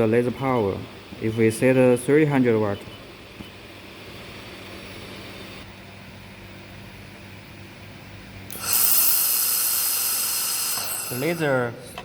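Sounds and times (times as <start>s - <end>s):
welding machine hum: 8.3s - 11.7s
loud steady gas hiss: 8.5s - 11.9s.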